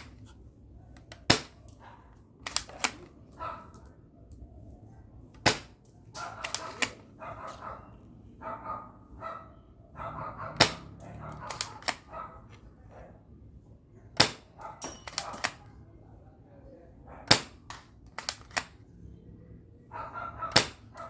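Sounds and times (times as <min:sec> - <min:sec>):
airsoft pistol shots: 0:05.4 - 0:07.0, 0:10.6 - 0:12.1, 0:14.2 - 0:15.6, 0:17.3 - 0:18.7, 0:20.5 - 0:21.0.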